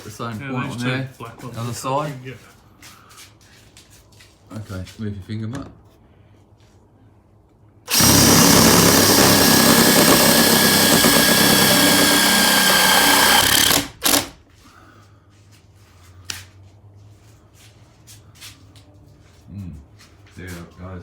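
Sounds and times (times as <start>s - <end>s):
cordless drill driving screw: 7.9s - 14.4s.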